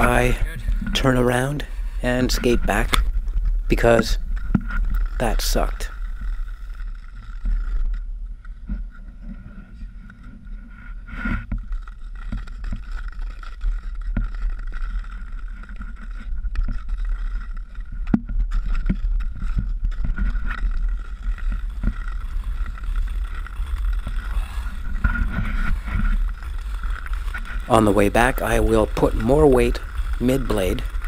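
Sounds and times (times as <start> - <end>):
skate blades scraping ice: 0.0 - 31.0.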